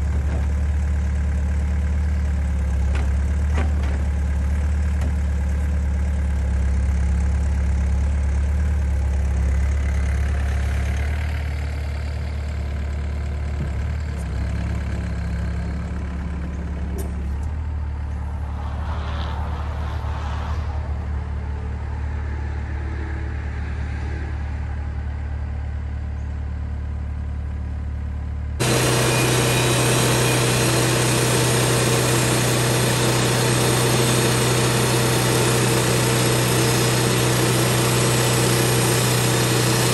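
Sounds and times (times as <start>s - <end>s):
engine idling: 0.0s - 18.7s, 22.6s - 39.9s
engine running at high speed: 13.6s - 26.7s, 28.4s - 39.9s.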